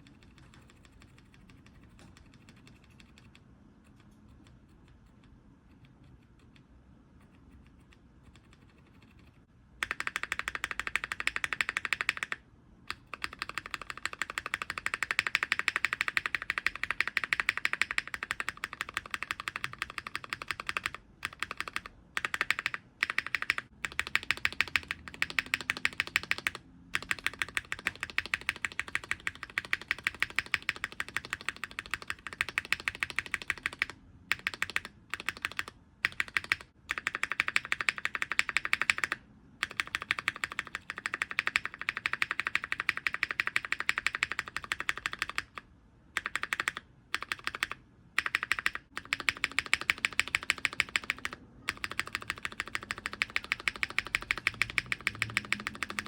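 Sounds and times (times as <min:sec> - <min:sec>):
keyboard spacebar clacking: 0:46.2 - 0:56.0.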